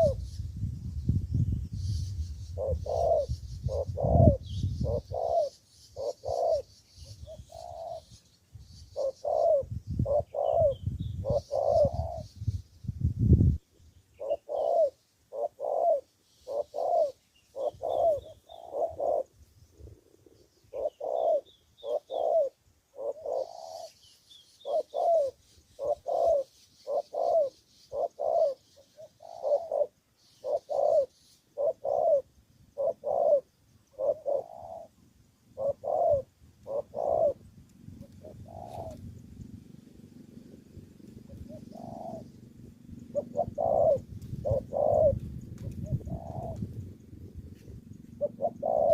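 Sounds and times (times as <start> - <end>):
dove cooing: 0.0 - 0.4, 2.0 - 8.2, 8.8 - 12.4, 14.1 - 24.0, 24.6 - 48.9.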